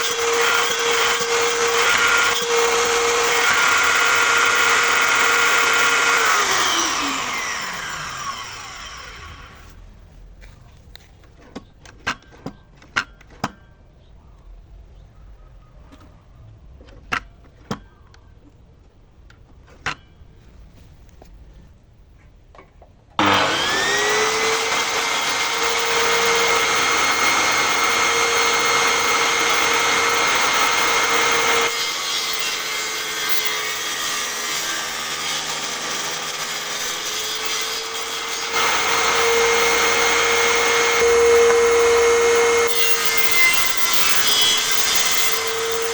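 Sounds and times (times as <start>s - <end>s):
table saw whining: 0.0s - 9.8s, 23.2s - 45.9s.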